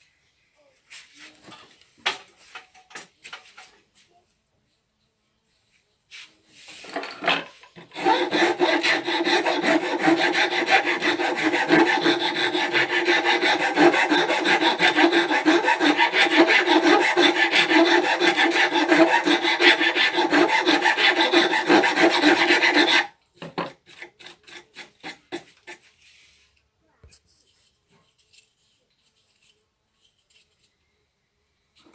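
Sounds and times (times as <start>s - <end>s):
hand tool scraping wood: 6.8s - 26.0s.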